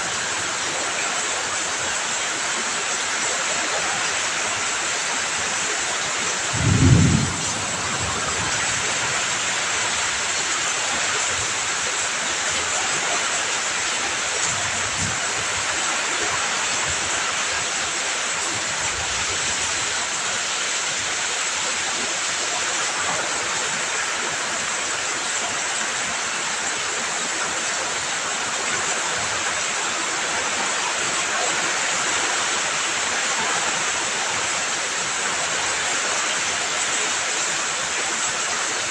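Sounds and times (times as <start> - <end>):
heavy rain falling: 0.0 - 38.9
low thump: 6.6 - 8.8.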